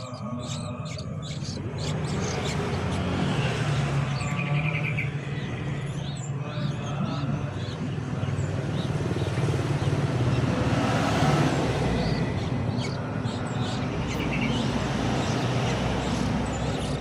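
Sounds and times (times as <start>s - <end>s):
bird chick chirping: 0.0s - 17.0s
low traffic rumble: 0.0s - 17.0s.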